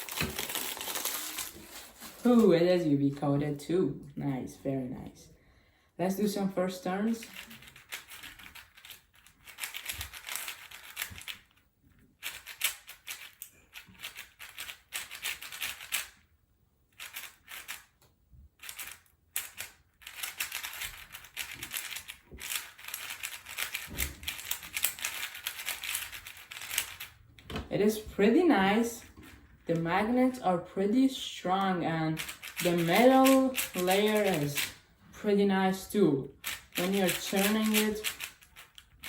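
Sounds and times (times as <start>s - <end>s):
speed cube plastic clicking turns: 7.2s - 11.6s, 12.2s - 16.2s, 16.9s - 18.0s, 18.6s - 27.1s, 32.2s - 34.8s, 36.4s - 39.0s.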